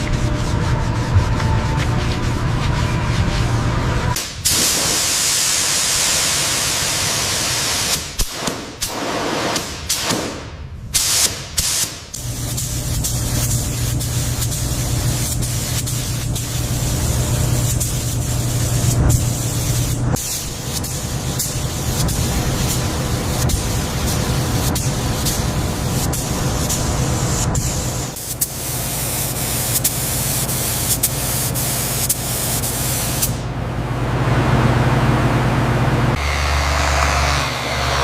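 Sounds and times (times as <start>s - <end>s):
steady machine hum: 0.0s - 4.2s, 12.2s - 38.0s
strong air hiss: 4.2s - 33.5s.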